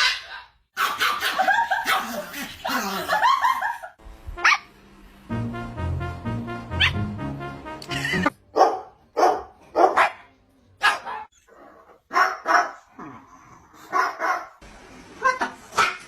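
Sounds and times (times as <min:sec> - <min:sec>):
dog barking: 0:08.5 - 0:11.3, 0:12.1 - 0:12.9, 0:13.9 - 0:14.6.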